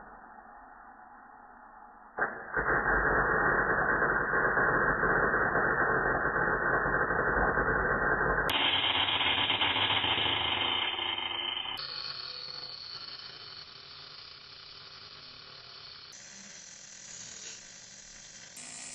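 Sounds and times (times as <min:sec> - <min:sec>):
welder arc crackling: 0:08.5 - 0:18.9.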